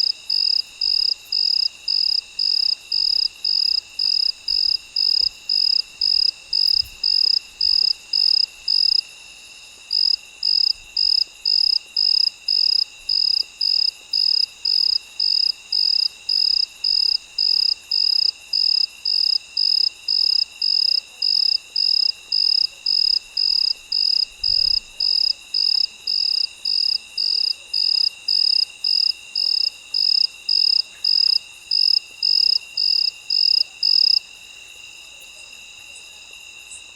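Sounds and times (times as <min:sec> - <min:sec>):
cricket chirping: 0:00.0 - 0:36.9
insects trilling: 0:00.0 - 0:36.9.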